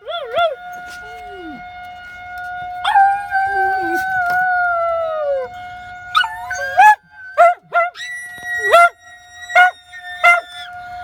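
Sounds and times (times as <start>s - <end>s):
warning siren: 0.0s - 11.0s
dog howling: 6.2s - 10.7s
dog yipping: 7.4s - 10.7s.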